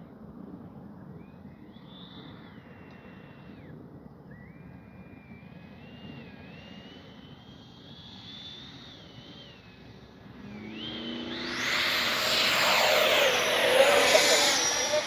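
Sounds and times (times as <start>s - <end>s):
electric ducted fan jet whine: 5.9s - 15.0s.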